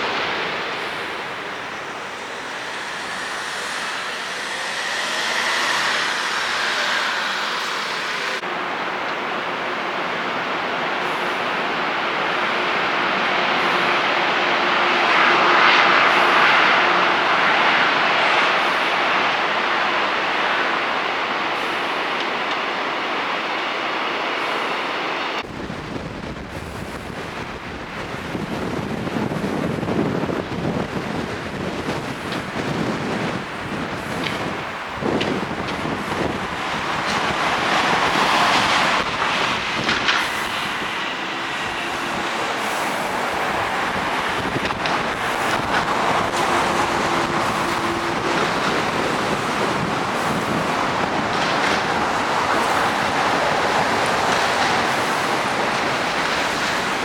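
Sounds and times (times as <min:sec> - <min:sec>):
vehicle passing: 0:00.0 - 0:08.5
faint steady whine: 0:00.0 - 0:57.0
train running past: 0:00.0 - 0:57.0
wheels clicking on track: 0:00.0 - 0:57.0.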